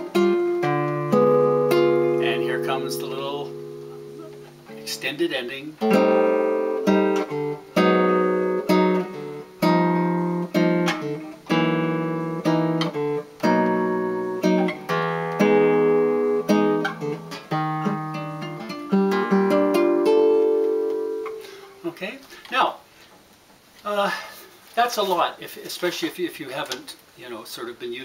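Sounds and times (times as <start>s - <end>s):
solo guitar jazz chords: 0.0s - 21.9s.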